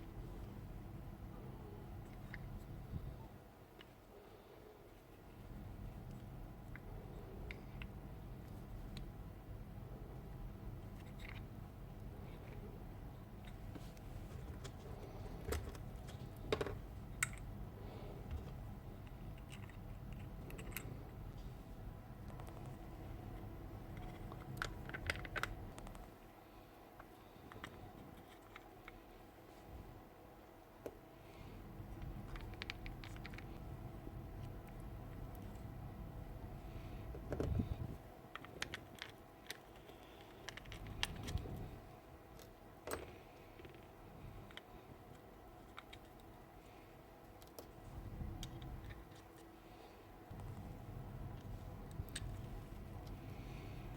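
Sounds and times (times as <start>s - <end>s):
low background hum: 0.0s - 53.9s
clicks and knocks of parts handled: 13.4s - 17.5s.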